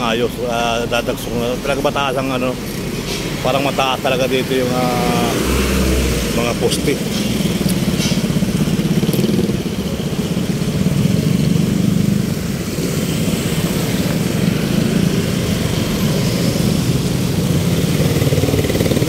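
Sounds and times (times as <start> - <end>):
small motorcycle engine running: 7.4 - 19.0.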